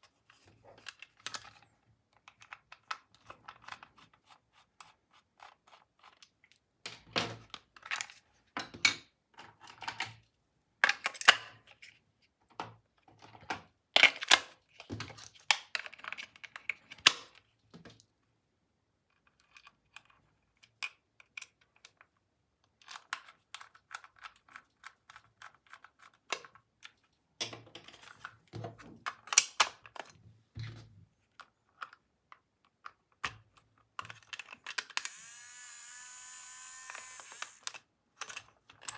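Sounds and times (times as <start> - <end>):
plastic toys clicking and tapping: 19.2 - 30.1, 31.4 - 35.2.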